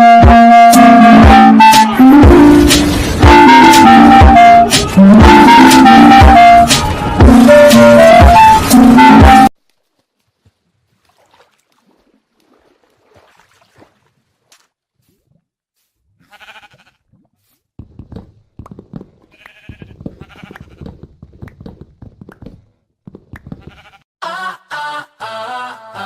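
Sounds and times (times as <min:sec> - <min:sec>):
bleating animal calls: 0:16.2 - 0:17.0, 0:19.3 - 0:20.8, 0:23.6 - 0:24.5
knocking and clattering: 0:17.8 - 0:23.7.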